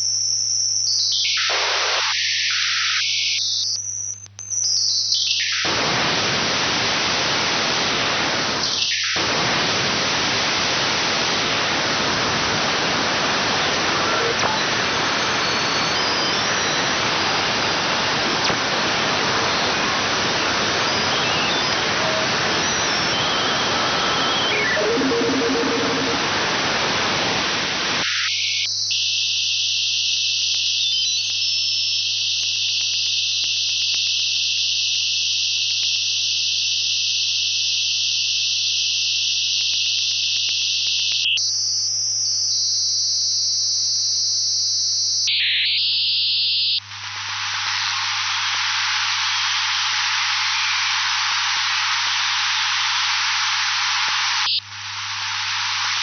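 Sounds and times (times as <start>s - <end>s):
radio static hiss: 1.1s - 41.6s, 44.1s - 56.0s
radio whistling tones: 13.5s - 17.2s, 19.2s - 26.7s, 45.3s - 56.0s.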